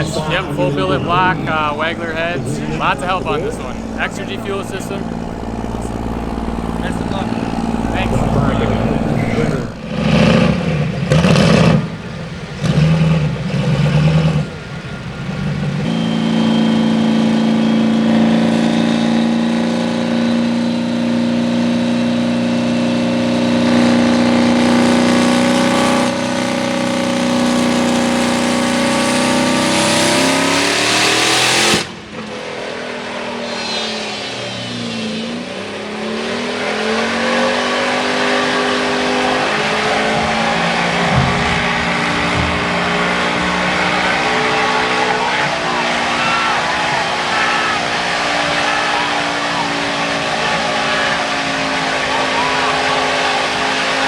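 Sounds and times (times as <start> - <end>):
diesel engine revving: 0.0 - 54.0
quieter engine note: 0.0 - 54.0.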